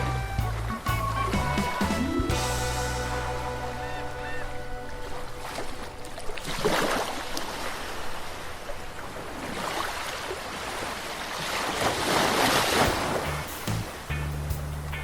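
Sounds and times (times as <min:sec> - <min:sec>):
sea waves washing onto shore: 0:02.9 - 0:13.6.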